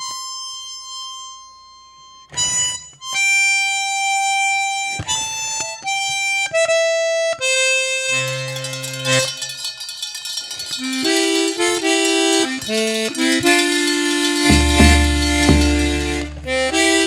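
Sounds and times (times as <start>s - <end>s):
accordion playing slow melody: 0.0s - 9.6s, 10.8s - 17.0s.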